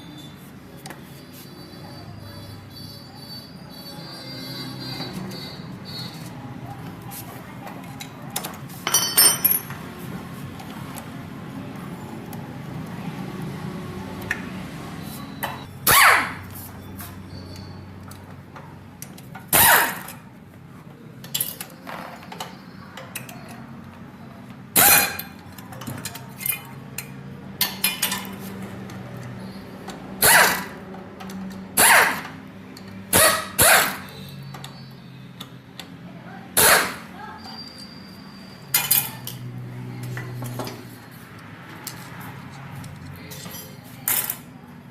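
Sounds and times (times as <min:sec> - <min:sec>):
power tool bursts: 0:30.2 - 0:30.8, 0:31.8 - 0:32.3, 0:36.6 - 0:37.1.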